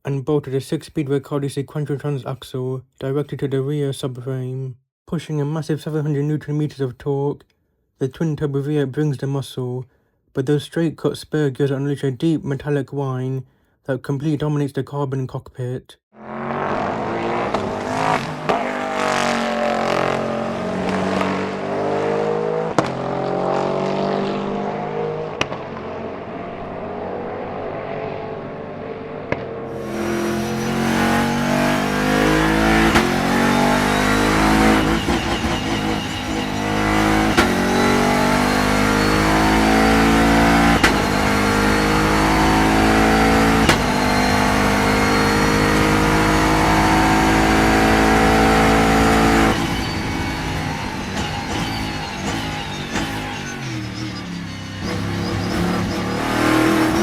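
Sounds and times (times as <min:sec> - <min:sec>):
race car engine revving: 0:16.2 - 0:57.0
high metallic gear whine: 0:29.7 - 0:39.8, 0:49.2 - 0:57.0.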